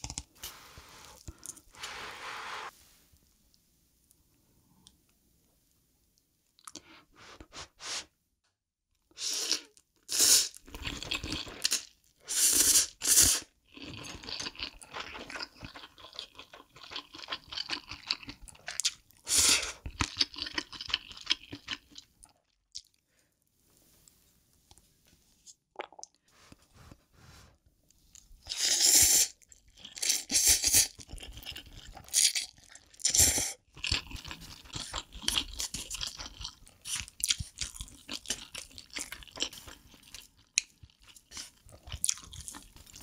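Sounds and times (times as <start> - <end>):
crackly chewing: 13.7 - 19.2, 19.8 - 23.0, 29.4 - 43.0.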